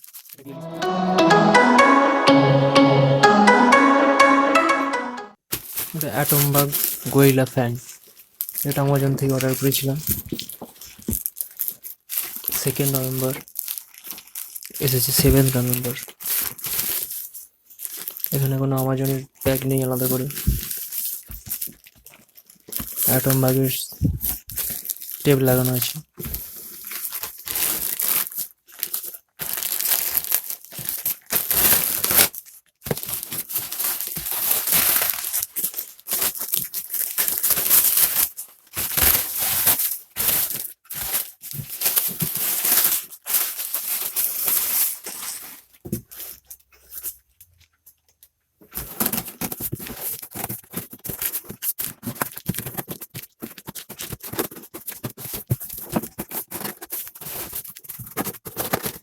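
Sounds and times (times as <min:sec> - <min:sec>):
cardboard and wrapping crinkling: 0:00.0 - 0:00.4, 0:07.9 - 0:18.3, 0:20.4 - 0:23.2, 0:24.2 - 0:47.2, 0:48.7 - 0:59.0.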